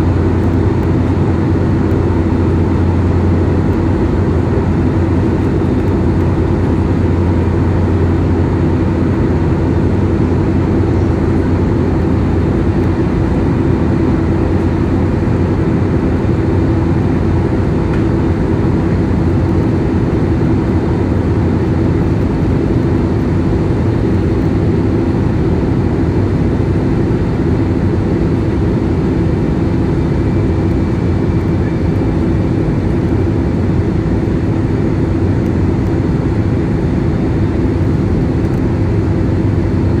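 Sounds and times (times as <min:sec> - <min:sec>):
airliner cabin engine hum: 0:00.0 - 0:40.0.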